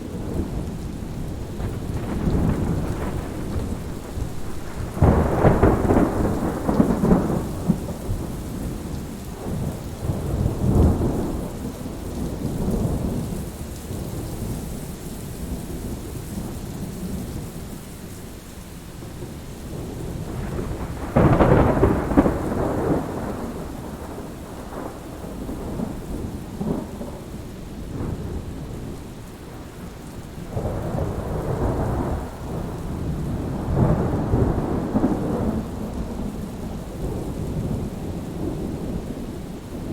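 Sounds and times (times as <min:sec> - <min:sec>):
rolling thunder: 0:00.0 - 0:14.4, 0:19.1 - 0:39.9
steady rain: 0:00.0 - 0:39.9
sharp thunderclap: 0:00.2 - 0:11.5, 0:19.8 - 0:27.2, 0:30.5 - 0:36.4.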